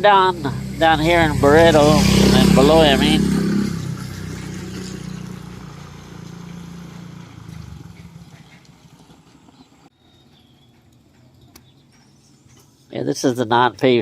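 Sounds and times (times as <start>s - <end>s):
motorcycle engine moving off: 0.0s - 12.9s.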